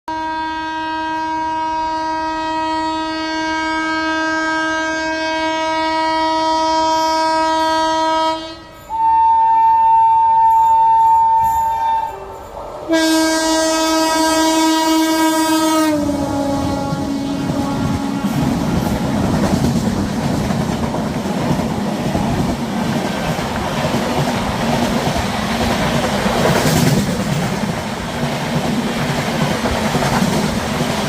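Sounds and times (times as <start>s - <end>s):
locomotive dual-tone horn: 0.1s - 19.3s
passing train rush and clatter: 0.1s - 31.0s.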